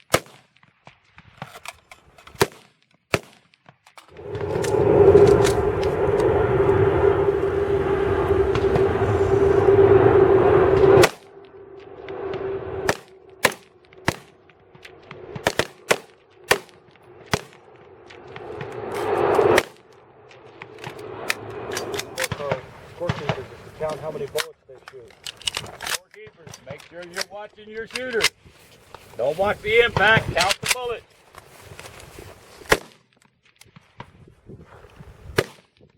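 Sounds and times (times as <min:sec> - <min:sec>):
constant hum: 0:04.0 - 0:28.2
loud steady rushing noise: 0:04.1 - 0:24.1
rifles firing: 0:15.4 - 0:17.6.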